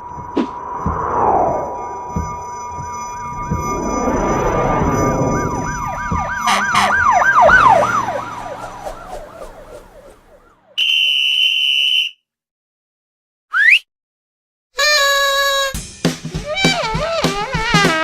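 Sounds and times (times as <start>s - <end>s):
steady buzzer tone: 0.0s - 7.5s
siren wailing: 0.0s - 11.1s.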